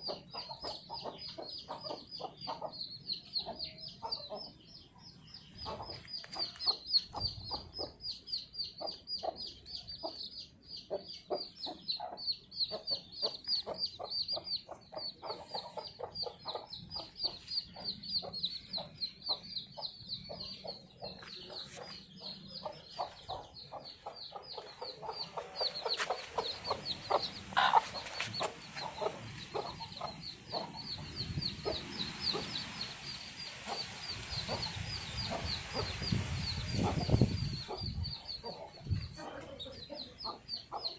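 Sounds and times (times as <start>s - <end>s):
baby chicks peeping: 0.0s - 40.9s
background hiss: 25.2s - 37.8s.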